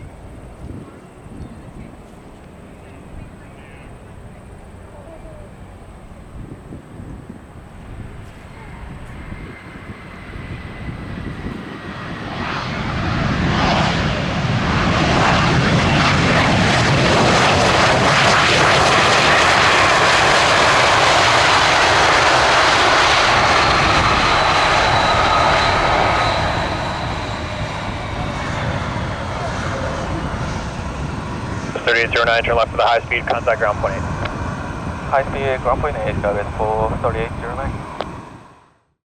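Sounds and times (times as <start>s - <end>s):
jet engines rushing: 0.0s - 38.7s.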